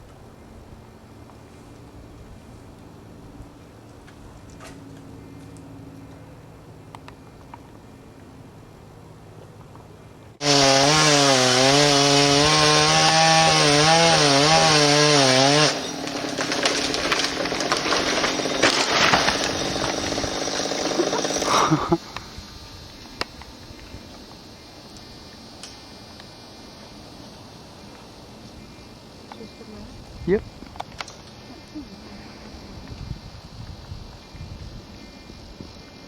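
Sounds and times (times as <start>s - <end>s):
chainsaw cutting wood: 10.4s - 22.4s.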